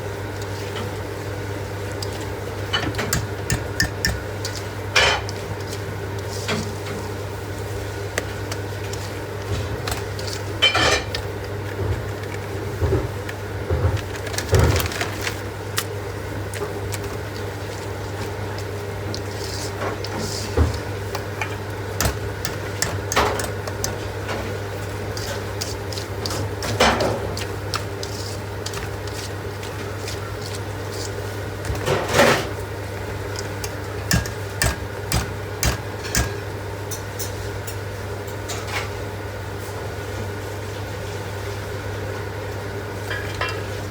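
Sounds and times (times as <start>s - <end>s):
utensils and containers clinking: 1.9s - 7.1s, 8.3s - 37.8s
scraping or rustling: 24.9s - 32.6s.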